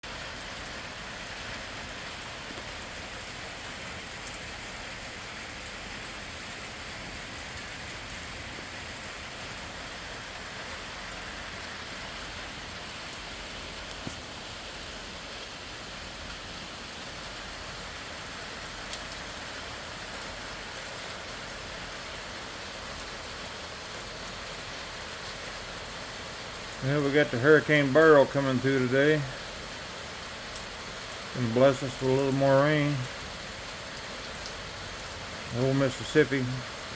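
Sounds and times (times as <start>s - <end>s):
louder raindrops: 0.0s - 36.9s
steady rain hissing: 0.0s - 36.9s.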